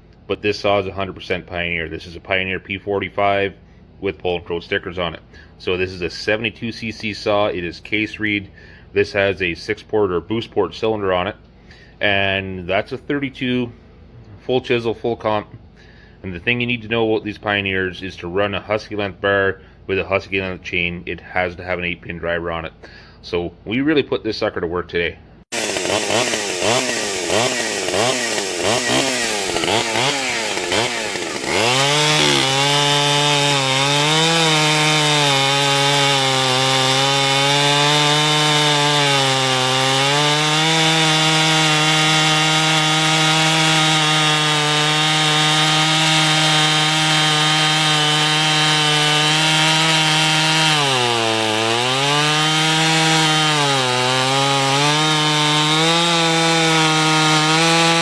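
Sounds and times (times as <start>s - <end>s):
chainsaw cutting wood: 25.5s - 58.0s.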